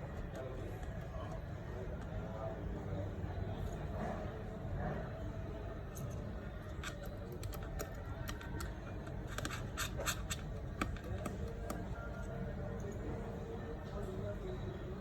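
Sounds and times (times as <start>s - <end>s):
small tool scraping metal housing: 6.7s - 11.4s.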